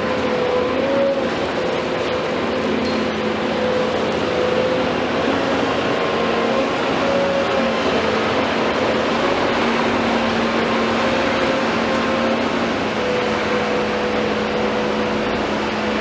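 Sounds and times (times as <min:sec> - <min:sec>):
excavator engine and hydraulics: 0:00.0 - 0:16.0.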